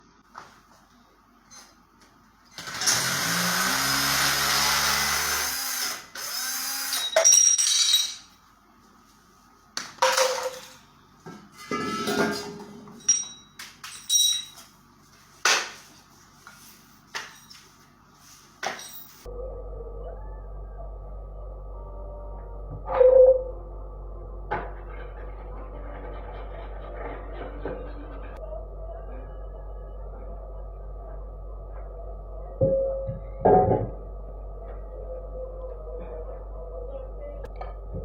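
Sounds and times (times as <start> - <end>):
power tool grinding or drilling: 2.6 - 7.1
music: 19.3 - 30.9.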